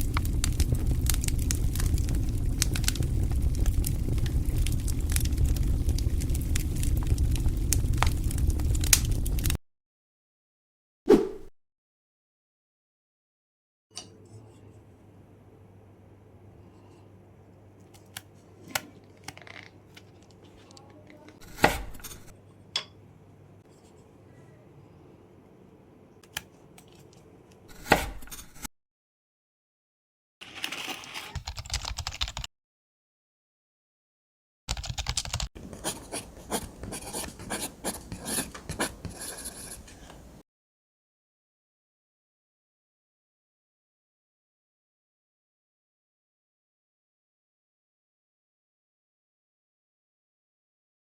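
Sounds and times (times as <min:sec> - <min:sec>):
scratching and rubbing: 0:30.4 - 0:31.5, 0:35.6 - 0:40.0.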